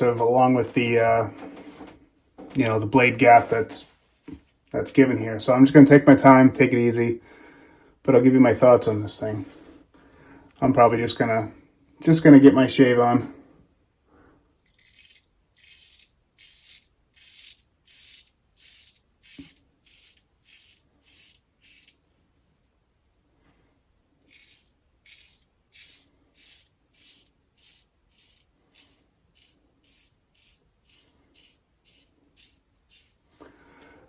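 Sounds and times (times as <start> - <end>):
razor scraping stubble: 14.6 - 22.0, 24.2 - 33.4.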